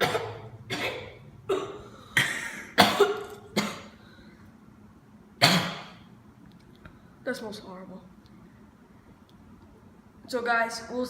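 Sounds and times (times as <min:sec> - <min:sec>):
person coughing: 0:00.0 - 0:04.0, 0:05.4 - 0:06.1.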